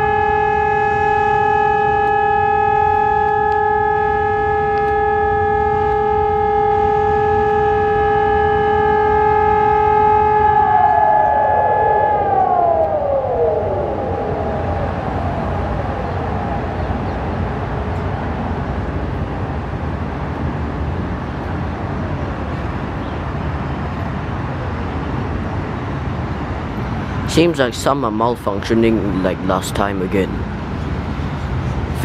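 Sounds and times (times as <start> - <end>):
warning sirens sliding down: 0.0 - 23.3
low background rumble: 4.0 - 22.8.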